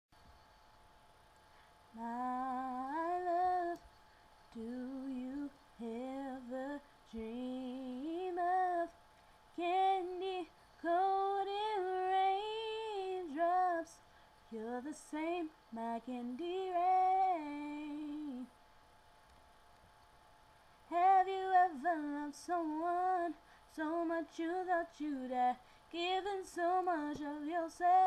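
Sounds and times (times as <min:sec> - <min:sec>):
woman singing unaccompanied: 0:02.0 - 0:03.8, 0:04.5 - 0:09.0, 0:09.6 - 0:18.6, 0:20.9 - 0:28.0.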